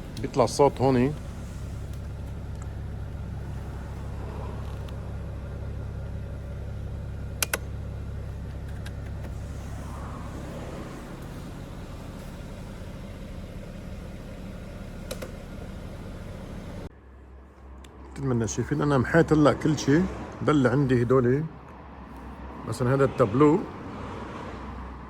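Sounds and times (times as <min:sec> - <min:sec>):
low machine hum: 0:00.0 - 0:19.3
sharp clicks: 0:07.4 - 0:07.7, 0:15.1 - 0:15.4.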